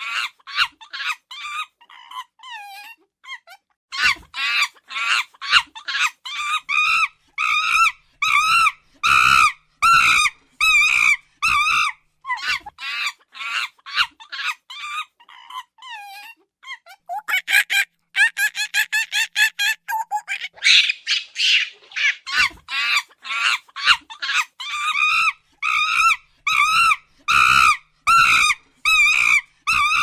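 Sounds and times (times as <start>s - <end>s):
monkey high-pitched calls: 4.0s - 16.3s, 17.1s - 30.0s.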